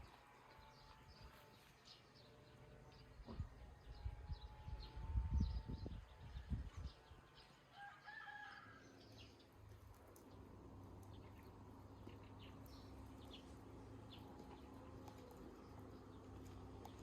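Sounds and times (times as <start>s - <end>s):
small birds chirping: 0.0s - 17.0s
distant rooster crowing: 7.7s - 9.2s.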